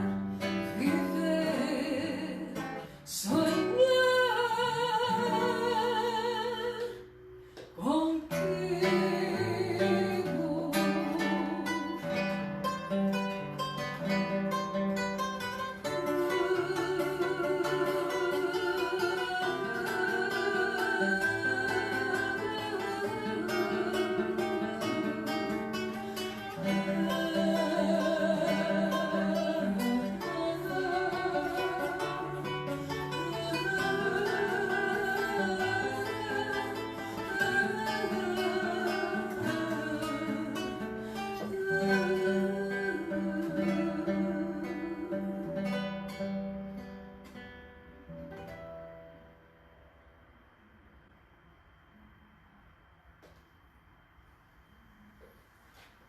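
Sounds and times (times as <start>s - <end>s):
person singing with vibrato: 0.0s - 7.1s, 7.7s - 12.9s, 15.6s - 46.2s
acoustic guitar: 0.0s - 53.6s.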